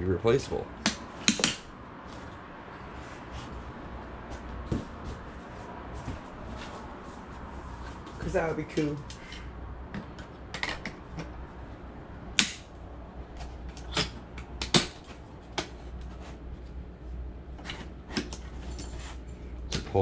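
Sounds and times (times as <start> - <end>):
low steady hum: 0.0 - 20.0.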